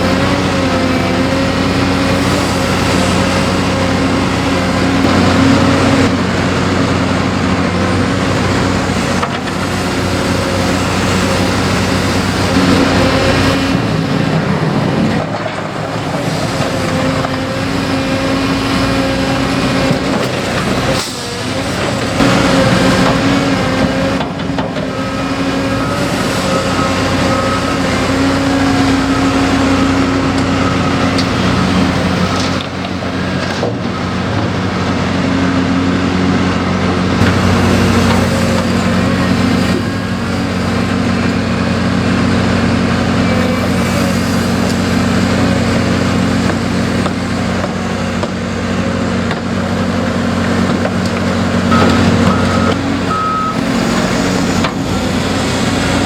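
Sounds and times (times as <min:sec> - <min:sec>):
heavy machinery diesel engines: 0:00.0 - 0:56.0
backup alarm beeping: 0:51.7 - 0:54.2.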